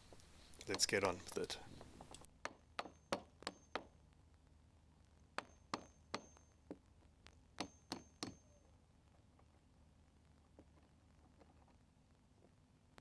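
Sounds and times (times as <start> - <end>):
hammer striking chisel: 2.4 - 3.9, 5.4 - 6.5, 7.6 - 8.6.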